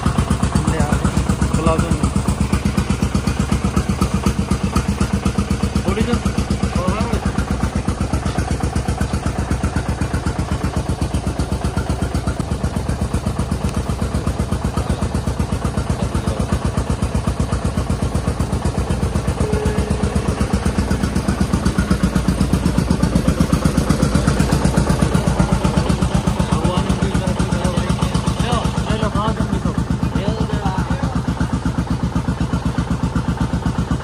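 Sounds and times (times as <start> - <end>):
tractor diesel engine running: 0.0 - 34.0.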